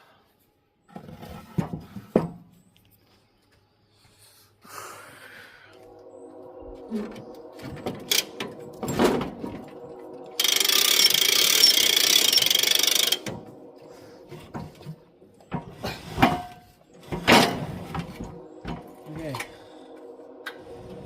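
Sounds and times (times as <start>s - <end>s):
fast mechanical ratchet rattle: 10.4s - 13.2s.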